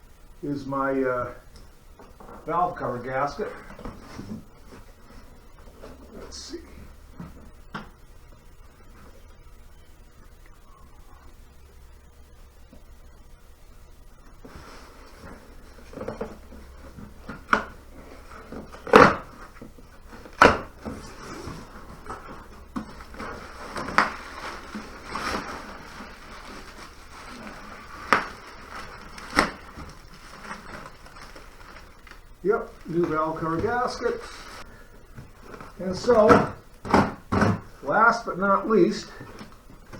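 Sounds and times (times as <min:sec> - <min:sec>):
packaging rustling: 0:14.5 - 0:38.0, 0:38.8 - 0:39.9.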